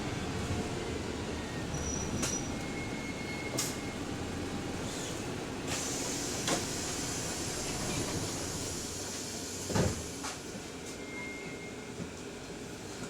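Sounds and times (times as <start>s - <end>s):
bus engine and road noise: 0.0s - 13.0s.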